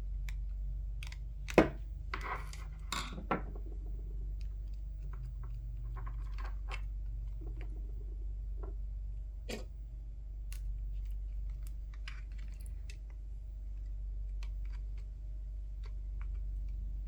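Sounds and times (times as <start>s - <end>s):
screwdriver clicking on plastic: 1.0s - 2.4s.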